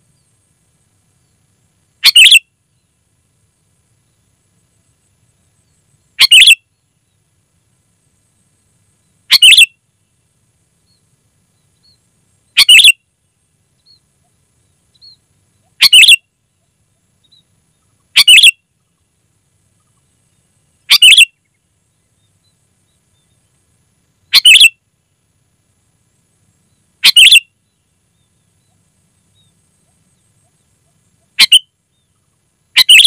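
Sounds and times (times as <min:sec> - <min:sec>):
faint bird chirps: 0:01.2 - 0:03.0, 0:04.0 - 0:07.3, 0:08.1 - 0:24.8, 0:26.6 - 0:33.0
bird calling loud phrases: 0:02.0 - 0:02.4, 0:06.2 - 0:06.6, 0:09.3 - 0:09.7, 0:12.6 - 0:13.0, 0:15.0 - 0:16.2, 0:18.2 - 0:18.6, 0:20.9 - 0:21.3, 0:24.3 - 0:24.7, 0:27.0 - 0:27.4, 0:29.9 - 0:31.6, 0:32.8 - 0:33.0.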